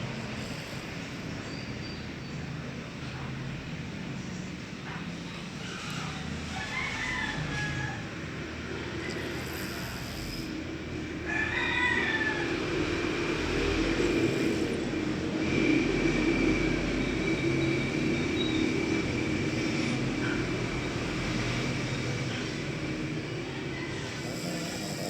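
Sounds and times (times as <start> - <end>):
rooster crowing: 6.5 - 8.4, 11.2 - 14.8, 23.4 - 25.0.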